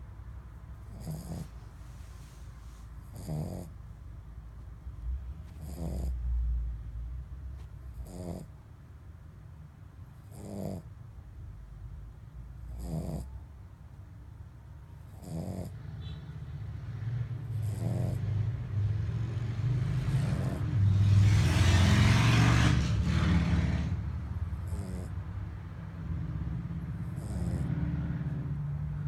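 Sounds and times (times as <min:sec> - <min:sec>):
dog snoring: 0:00.8 - 0:03.8, 0:05.5 - 0:06.2, 0:07.9 - 0:08.5, 0:10.2 - 0:10.9, 0:12.6 - 0:13.4, 0:15.0 - 0:15.8, 0:17.2 - 0:25.3, 0:26.8 - 0:28.6.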